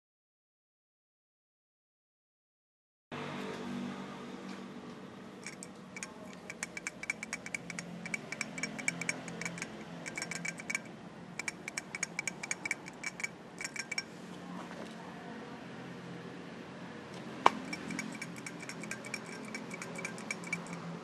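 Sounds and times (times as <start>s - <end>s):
metallic ticking and clicking: 5.4s - 14.1s, 17.5s - 21.0s
low running hum: 5.4s - 14.4s, 17.5s - 21.0s.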